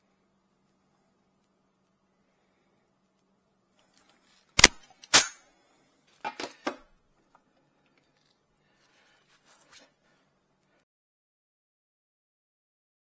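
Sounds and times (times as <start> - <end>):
sharp clicks: 4.6 - 5.3.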